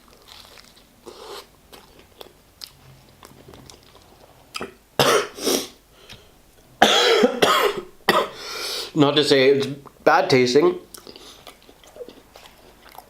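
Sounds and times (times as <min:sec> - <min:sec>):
man coughing: 0:05.0 - 0:05.4, 0:06.8 - 0:08.4.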